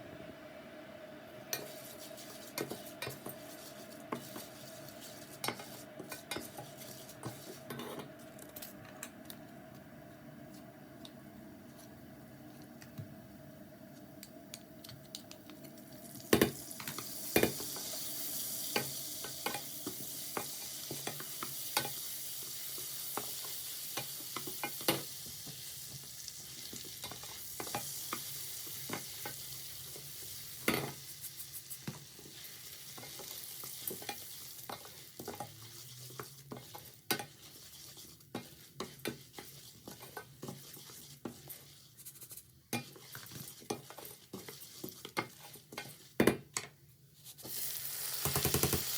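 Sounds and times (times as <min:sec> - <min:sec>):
food sizzling in a frying pan: 0:01.3 - 0:08.7, 0:15.5 - 0:42.0, 0:42.7 - 0:46.4, 0:47.2 - 0:48.9
utensil clinking and scraping pan: 0:01.5 - 0:08.8, 0:33.0 - 0:41.8, 0:42.7 - 0:46.2.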